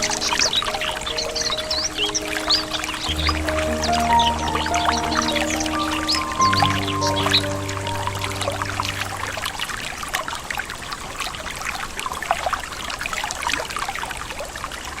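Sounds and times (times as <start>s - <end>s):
held music notes: 0.0s - 9.9s
river babbling and trickling: 0.0s - 15.0s.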